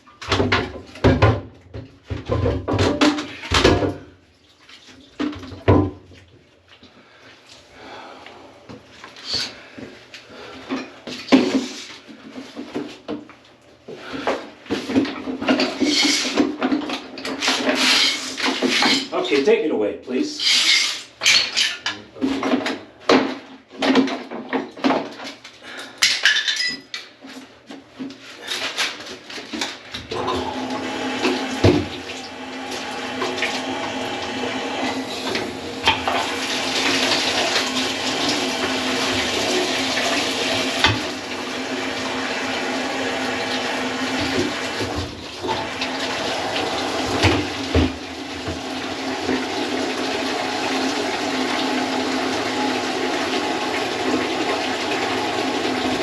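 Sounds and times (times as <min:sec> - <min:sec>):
rushing water: 0:30.2 - 0:56.0.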